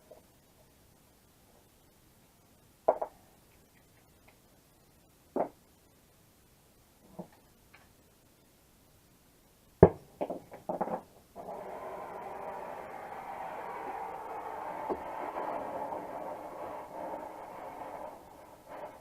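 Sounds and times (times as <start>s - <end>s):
steady rushing noise: 11.4s - 19.0s.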